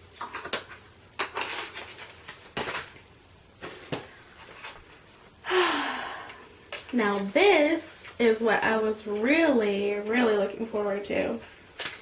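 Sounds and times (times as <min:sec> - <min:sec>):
packaging rustling: 0:00.1 - 0:05.4.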